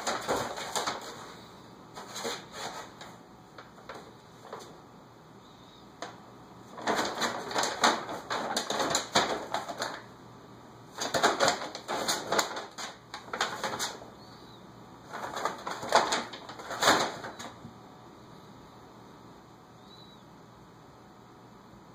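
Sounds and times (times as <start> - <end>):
paper bag crinkling and rustling: 0.0 - 4.8, 6.6 - 10.1, 10.9 - 14.1, 15.1 - 17.6.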